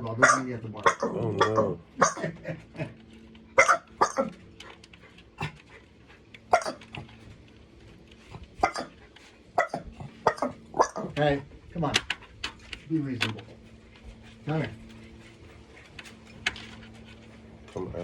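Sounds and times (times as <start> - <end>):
dog barking: 0.2 - 2.4, 3.6 - 4.4, 6.5 - 7.0, 8.6 - 9.0, 9.6 - 11.2.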